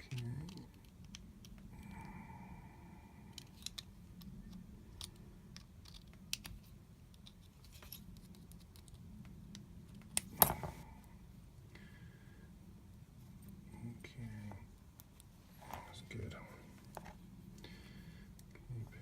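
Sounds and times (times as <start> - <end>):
metal clicks and taps of padlock: 3.3 - 10.6.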